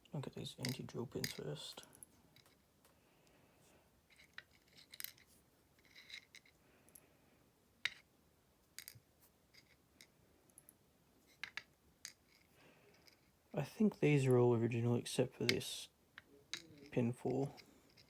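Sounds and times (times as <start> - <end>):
padlock pins clicking and clinking: 4.1 - 7.0, 16.2 - 18.0.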